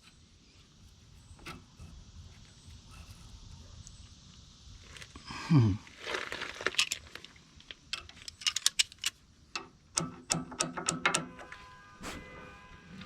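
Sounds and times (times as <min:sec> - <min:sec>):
metal washers clinking and rattling: 0:07.9 - 0:11.4
sharp metallic clicks: 0:07.9 - 0:11.5
short ringing tones: 0:11.1 - 0:13.0
low sliding tone: 0:11.3 - 0:13.0.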